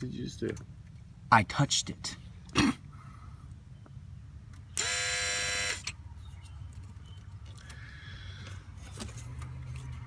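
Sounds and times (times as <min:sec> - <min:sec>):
loud pitched buzz: 0:04.8 - 0:05.9.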